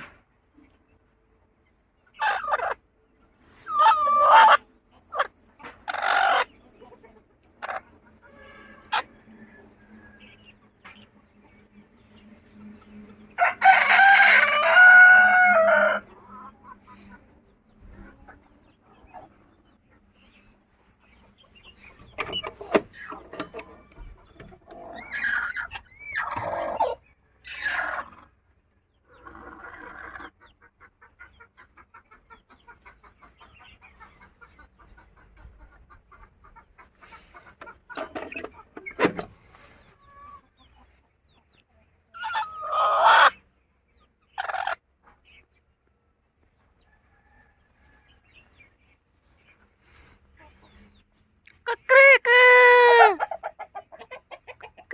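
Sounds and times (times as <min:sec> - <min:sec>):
hens clucking: 0:00.0 - 0:54.9
rooster crowing: 0:13.4 - 0:16.0.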